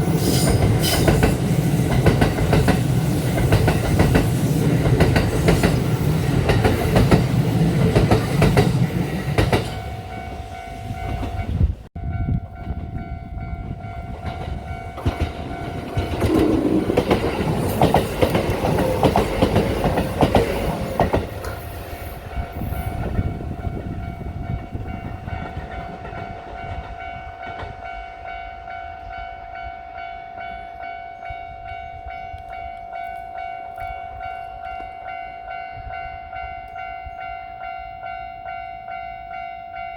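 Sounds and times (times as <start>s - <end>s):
train wheels clicking on rails: 0.0s - 11.7s, 12.3s - 28.4s.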